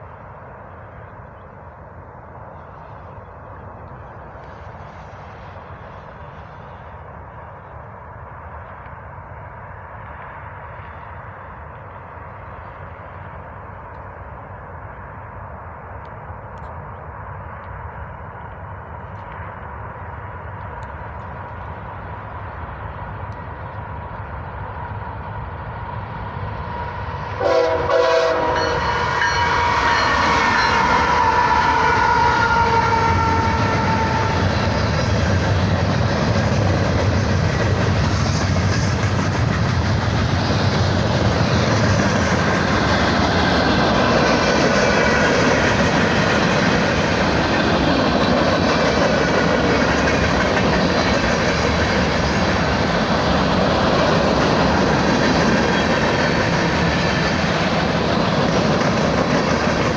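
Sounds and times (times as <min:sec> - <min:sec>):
diesel locomotives passing: 0:00.0 - 0:59.9
locomotive horn: 0:26.8 - 0:34.5
freight train wheel clatter: 0:28.4 - 0:59.9.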